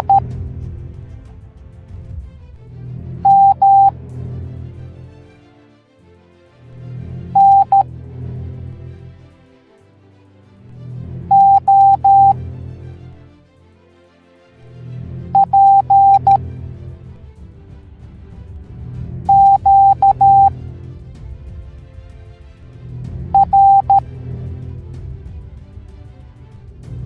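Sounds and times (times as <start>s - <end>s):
morse code beeps: 0.0s - 0.2s, 3.3s - 3.9s, 7.4s - 7.8s, 11.3s - 12.4s, 15.4s - 16.4s, 19.3s - 20.5s, 23.4s - 24.0s
background music with low bass: 0.0s - 27.0s.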